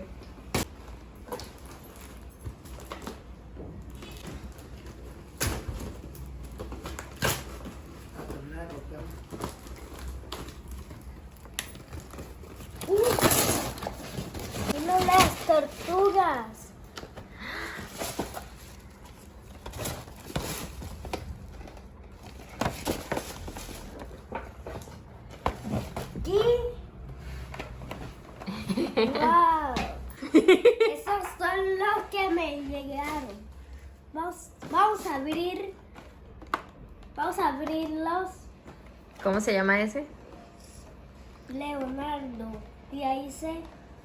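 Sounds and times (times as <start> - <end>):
toy packaging rustling and clicking: 4.0 - 17.2.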